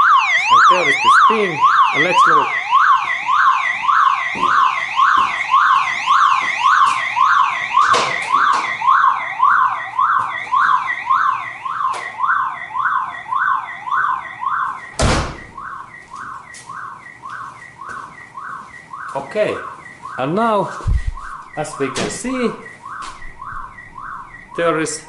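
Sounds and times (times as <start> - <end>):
car alarm siren wailing: 0.0 - 25.0
loud thump: 15.0 - 15.6, 20.8 - 22.2.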